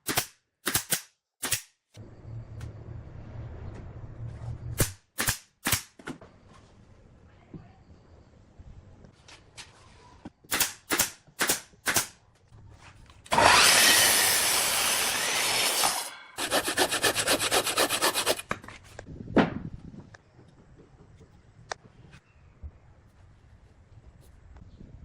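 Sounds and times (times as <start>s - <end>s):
tool rasping on wood: 13.4s - 18.5s.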